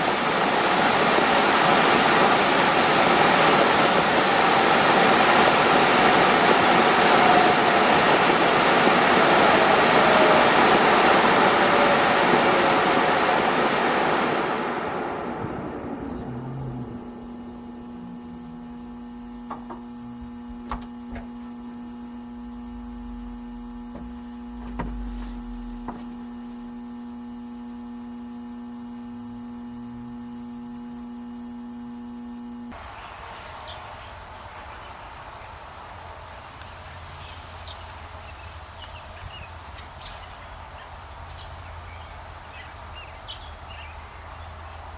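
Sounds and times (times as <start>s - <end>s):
rushing hiss: 0.0s - 17.1s, 32.8s - 39.2s
air conditioning electrical hum: 0.0s - 44.9s
high steady whine: 0.0s - 44.9s.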